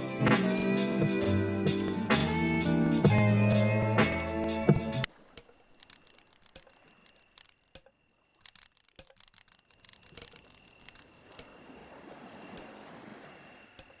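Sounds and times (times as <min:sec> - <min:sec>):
guitar music: 0:00.0 - 0:05.1
small clicks and ticks: 0:05.4 - 0:11.6
thin steady high tone: 0:09.4 - 0:14.0.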